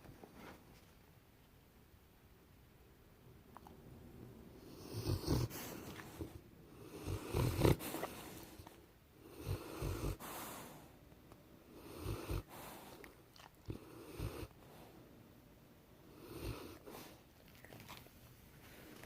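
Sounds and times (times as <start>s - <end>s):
dog snoring: 4.6s - 10.8s, 11.7s - 14.8s, 16.1s - 17.2s.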